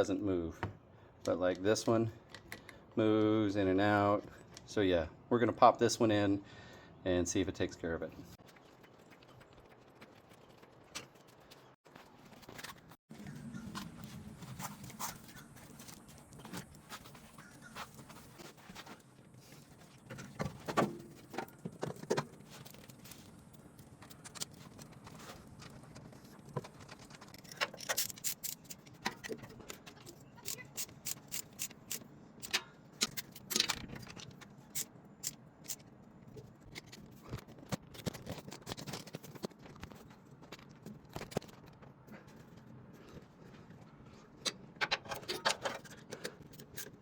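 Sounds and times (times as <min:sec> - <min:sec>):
metallic clicks of hand tools: 0:30.5 - 0:35.8.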